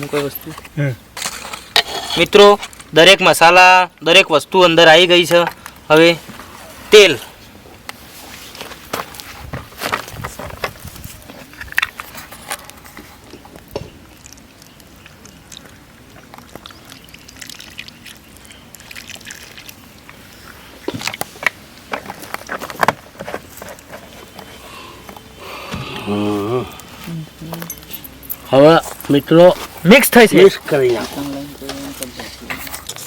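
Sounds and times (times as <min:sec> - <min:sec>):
oil pouring into a bowl: 0:16.3 - 0:19.8.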